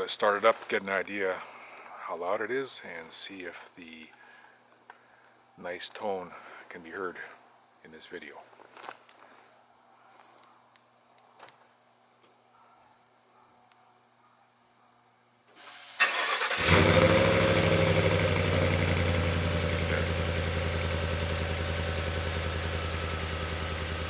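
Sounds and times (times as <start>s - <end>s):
engine starting with loud flare: 15.6s - 20.0s
deep engine idle: 16.5s - 24.0s.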